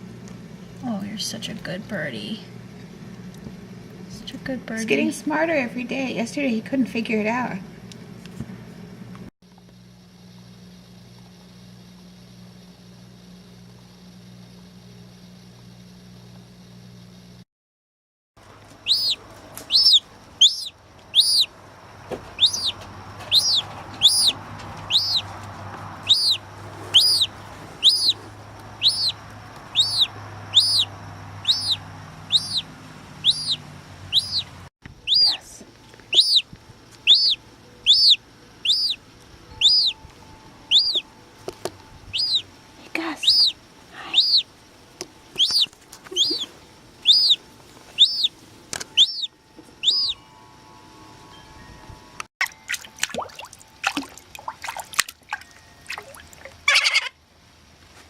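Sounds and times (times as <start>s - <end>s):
gull chick peeping: 18.8s - 21.5s, 22.2s - 25.4s, 26.0s - 35.4s, 36.1s - 39.0s, 39.6s - 40.0s, 40.7s - 42.5s, 43.2s - 44.5s, 45.3s - 50.2s, 56.7s - 57.1s.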